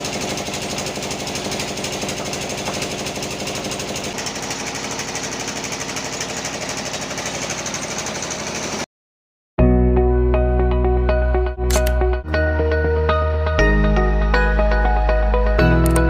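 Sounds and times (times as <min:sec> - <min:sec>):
band sawmill running: 0:00.0 - 0:08.9.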